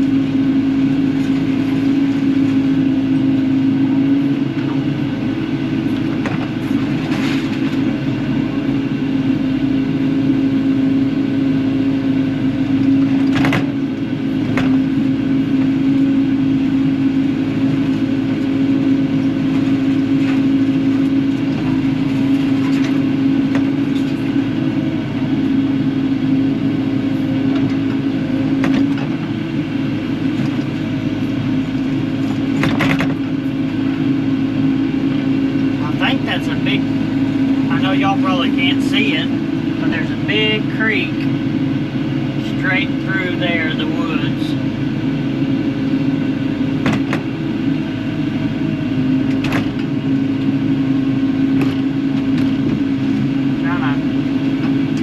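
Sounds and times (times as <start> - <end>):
excavator diesel engine running: 0.0 - 55.0.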